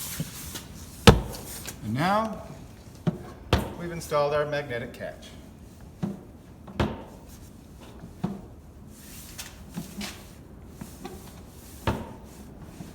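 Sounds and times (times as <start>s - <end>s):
baggage door shutting: 1.1s - 1.6s.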